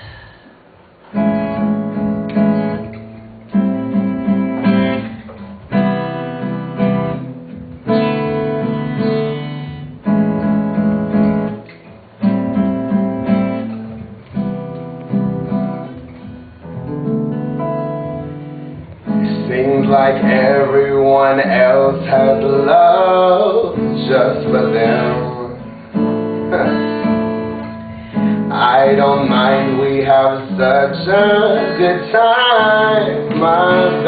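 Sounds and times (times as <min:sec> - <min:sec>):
acoustic guitar strumming: 0:00.0 - 0:34.0.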